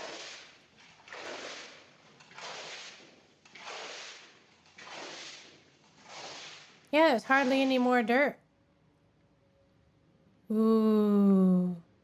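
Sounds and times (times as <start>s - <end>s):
wet swishing of cleaning tool: 0.0s - 7.9s.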